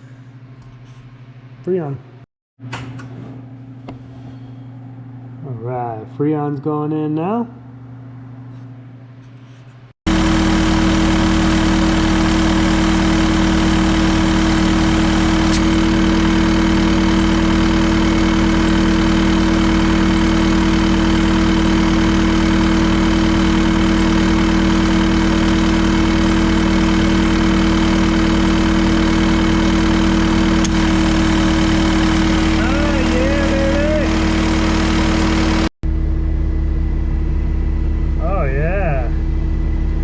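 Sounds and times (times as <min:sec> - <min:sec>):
diesel engine idling: 0:10.1 - 0:40.0.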